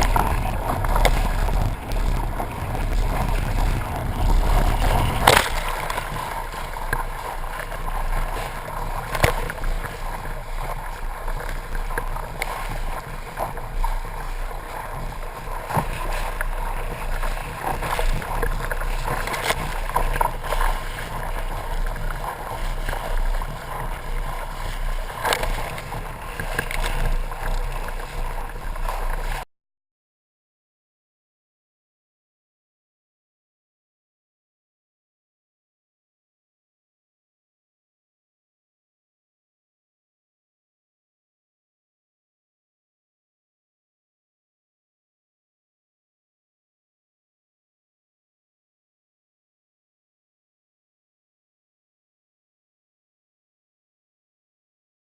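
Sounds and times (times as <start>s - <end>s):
wind buffeting microphone: 0.0s - 11.0s
water rushing along boat hull: 0.0s - 29.4s
water splashes: 0.0s - 29.4s.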